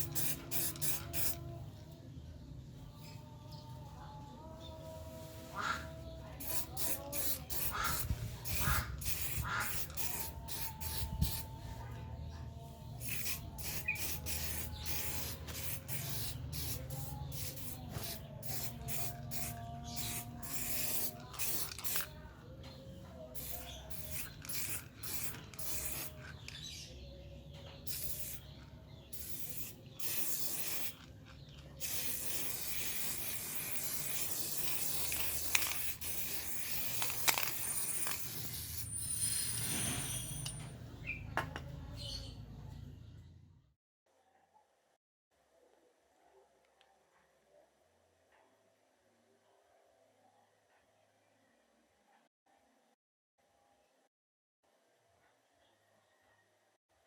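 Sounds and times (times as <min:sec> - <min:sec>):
aerosol spray can hissing: 0:00.0 - 0:01.4, 0:06.4 - 0:11.5, 0:13.0 - 0:22.1, 0:23.4 - 0:26.7, 0:27.9 - 0:40.6.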